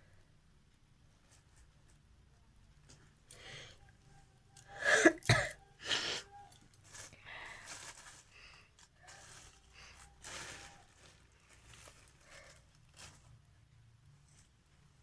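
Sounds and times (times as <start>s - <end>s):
person inhaling: 3.3s - 3.8s
breathy sounds: 3.3s - 4.0s, 4.6s - 13.1s
person sneezing: 4.7s - 6.5s.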